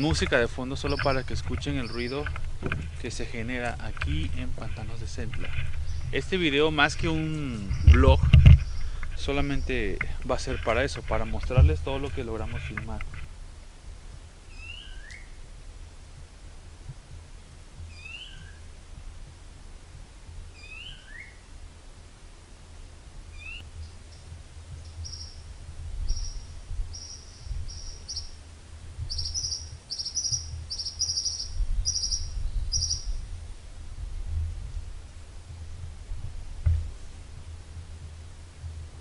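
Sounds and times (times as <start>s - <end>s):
rising two-part bird call: 14.5s - 15.4s, 29.1s - 33.2s.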